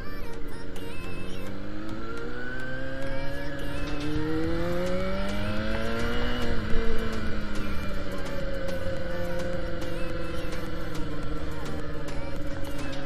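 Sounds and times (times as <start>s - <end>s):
motorcycle engine accelerating: 0.0s - 13.0s.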